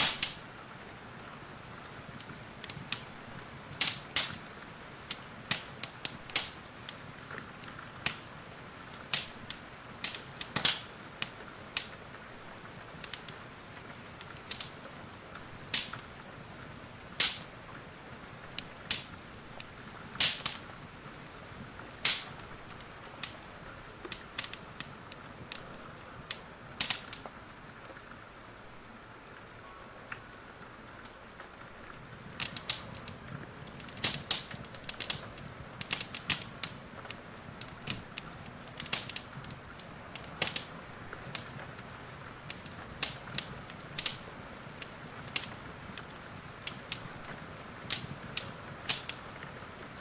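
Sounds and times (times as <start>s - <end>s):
sharp fire pops: 0.0s - 0.4s, 2.1s - 3.1s, 3.8s - 8.4s, 9.0s - 12.0s, 12.9s - 13.4s, 14.1s - 16.1s, 17.1s - 17.6s, 18.5s - 20.7s, 21.9s - 23.4s, 24.1s - 25.7s, 26.3s - 27.3s, 32.3s - 41.7s, 42.4s - 49.6s
rain hissing: 0.0s - 50.0s
wood fire crackling: 0.0s - 50.0s.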